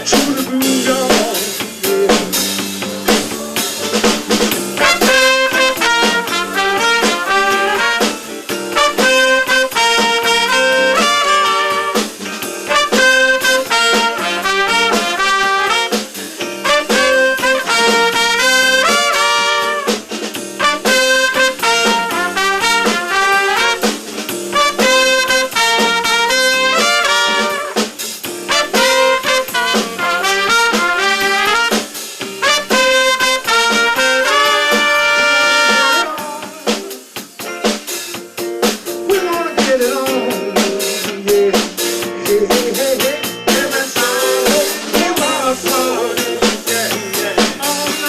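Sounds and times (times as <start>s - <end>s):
horn lead: 0.0s - 37.7s
jazz band playing: 0.0s - 48.0s.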